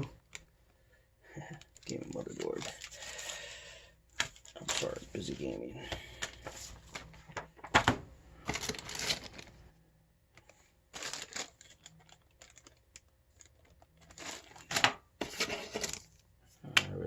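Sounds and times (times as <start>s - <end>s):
packaging crinkling and rustling: 1.5s - 3.4s, 4.2s - 5.5s, 6.3s - 9.7s, 10.4s - 16.1s.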